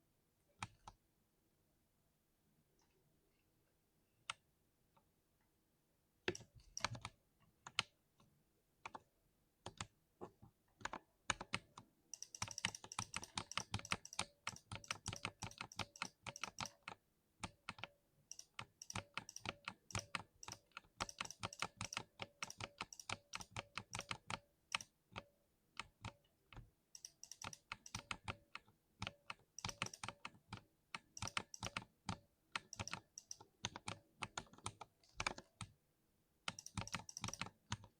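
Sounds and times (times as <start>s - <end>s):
mechanical keyboard typing: 6.3s - 7.9s, 10.8s - 35.8s, 36.5s - 37.9s.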